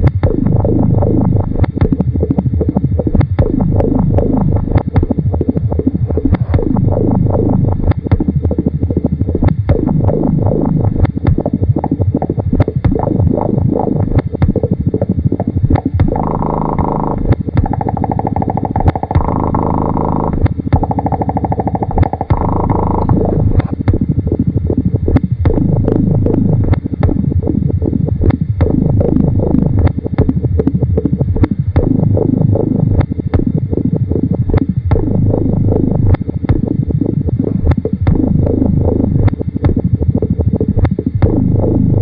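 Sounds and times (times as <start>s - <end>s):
low electronic drone: 0.0s - 42.0s
sustained electronic chords: 0.0s - 42.0s
irregular clicks and knocks: 15.4s - 24.0s.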